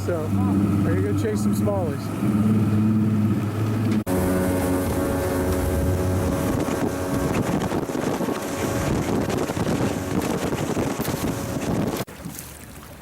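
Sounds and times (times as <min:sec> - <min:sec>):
wind buffeting microphone: 0:00.0 - 0:12.1
boat engine running: 0:00.0 - 0:13.0.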